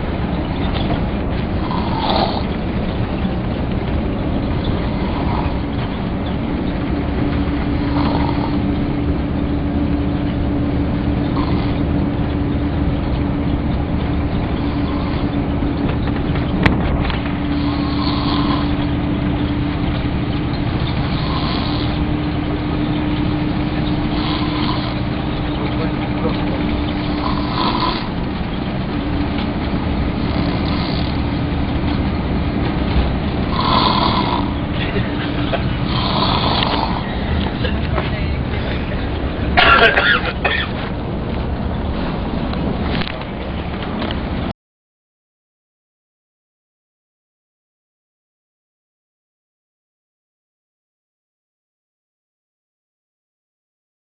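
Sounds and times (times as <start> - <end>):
bus running with hum: 0.0 - 44.6
man snoring: 1.6 - 2.5, 4.8 - 5.7, 7.7 - 8.7, 11.3 - 11.9, 14.6 - 15.3, 17.5 - 18.8, 21.0 - 22.1, 24.1 - 25.1, 26.9 - 28.2, 30.2 - 31.2, 33.4 - 34.7, 35.8 - 37.2.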